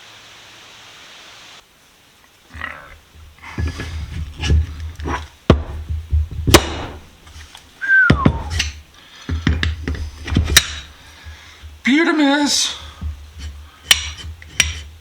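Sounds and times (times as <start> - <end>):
metal parts knocking and clinking: 8.4 - 11.9, 12.8 - 14.9.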